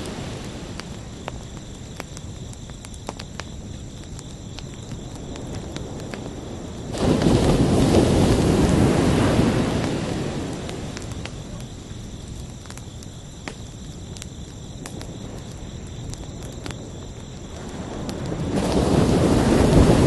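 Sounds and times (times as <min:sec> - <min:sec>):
crickets chirping: 0:00.0 - 0:20.0
ocean wave breaking: 0:07.0 - 0:10.9.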